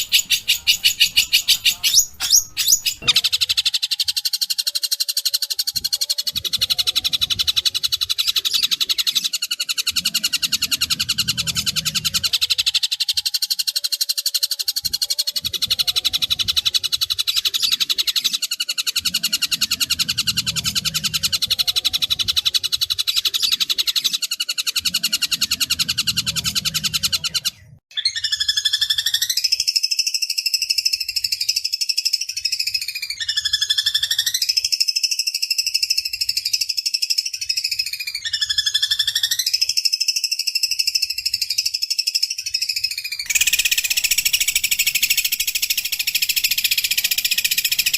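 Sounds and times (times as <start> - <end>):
bird swooping call with rasping trill: 0.0 - 3.5, 43.2 - 47.9
bird chattering rattle: 0.0 - 3.7, 43.2 - 47.9.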